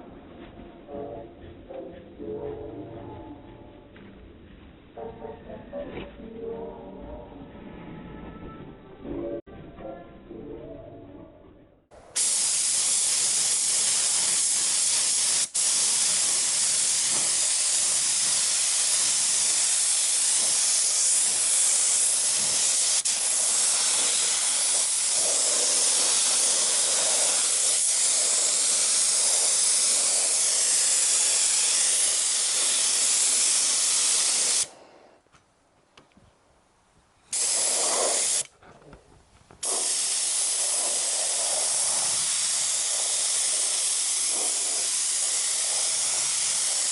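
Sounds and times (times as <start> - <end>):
paint spray gun hissing: 12.1 - 34.7, 37.3 - 38.5, 39.6 - 46.9.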